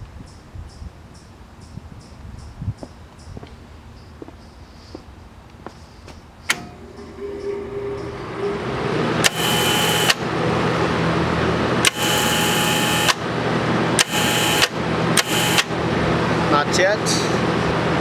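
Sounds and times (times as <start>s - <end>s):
transformer humming: 6.5s - 18.0s
hissing buzz: 6.7s - 16.5s
relay clicking: 9.2s - 10.4s, 11.8s - 13.3s, 14.0s - 15.8s.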